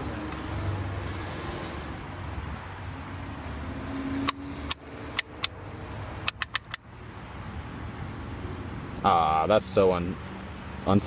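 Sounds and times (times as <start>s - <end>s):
plastic parts snapping into place: 6.3s - 6.8s.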